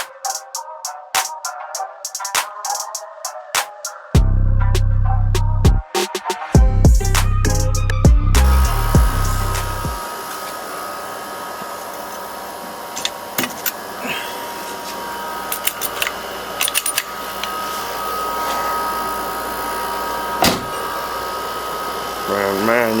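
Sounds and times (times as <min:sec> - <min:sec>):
high whining tones: 0:05.6 - 0:23.0
mechanical whir: 0:08.4 - 0:23.0.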